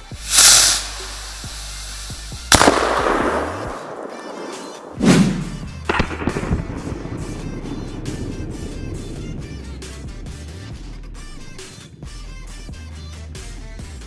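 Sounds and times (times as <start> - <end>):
sharp cracks: 0.0 - 12.0
firework bangs: 0.0 - 12.1
background music: 0.0 - 14.0.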